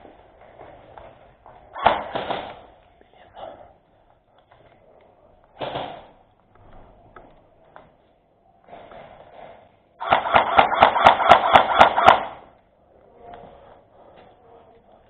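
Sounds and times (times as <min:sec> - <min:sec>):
airsoft gun rapid-fire burst: 0:10.0 - 0:12.4.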